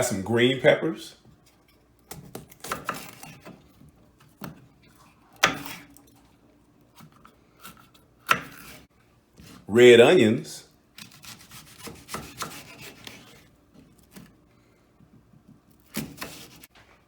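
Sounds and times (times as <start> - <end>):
knife cutting on cutting board: 2.1 - 6.0, 7.0 - 9.7, 11.0 - 14.3, 15.7 - 16.7.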